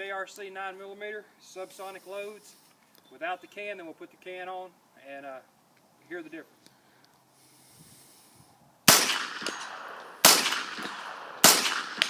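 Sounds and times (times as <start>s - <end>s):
rifle shots with echo: 8.9s - 12.0s.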